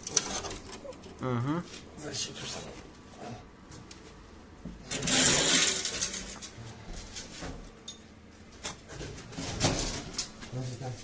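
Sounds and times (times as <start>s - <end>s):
metal guard scraping and rattling: 0.0s - 1.1s, 4.8s - 6.6s.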